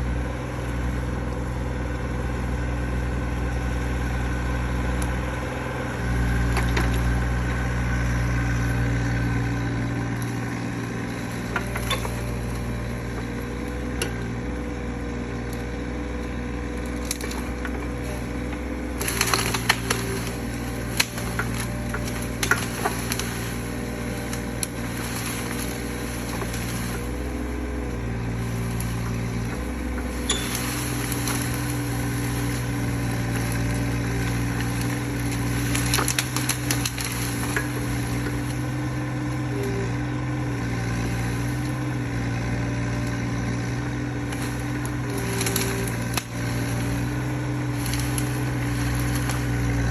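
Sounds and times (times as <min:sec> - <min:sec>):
excavator engine running: 0:00.0 - 0:49.9
wood cracking and snapping: 0:03.6 - 0:14.3, 0:15.4 - 0:49.9.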